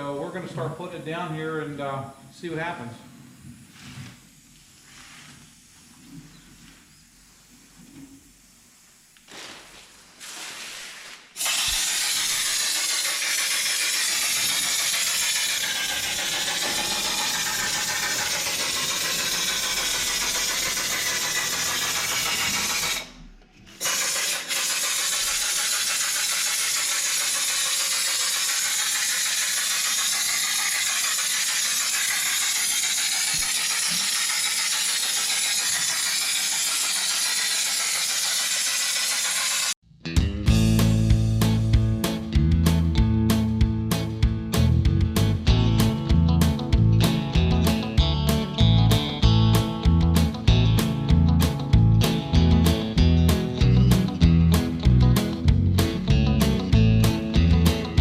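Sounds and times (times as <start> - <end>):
spray gun hissing: 2.1 - 23.2, 23.8 - 39.8.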